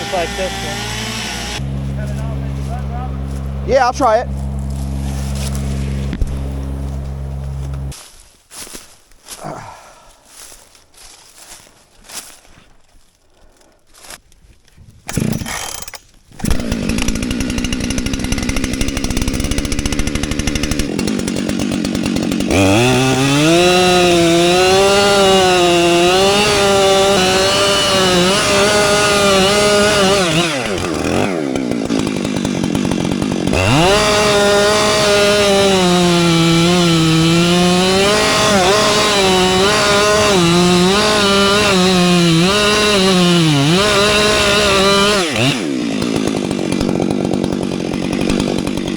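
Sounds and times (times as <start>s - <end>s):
chainsaw cutting log: 0.0s - 8.0s, 15.1s - 48.9s.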